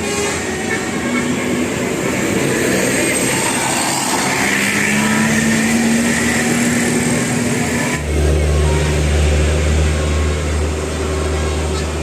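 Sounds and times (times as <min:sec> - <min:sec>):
bus road and engine noise: 0:00.0 - 0:12.0.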